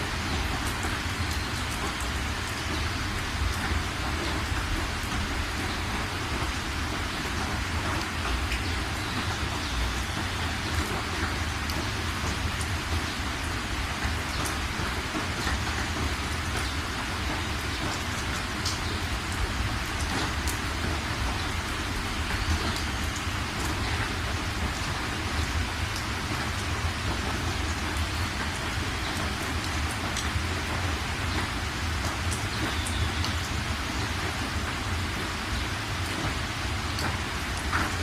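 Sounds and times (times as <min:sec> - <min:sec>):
steady rain falling: 0:00.0 - 0:38.0
raindrop ticks: 0:00.1 - 0:38.0.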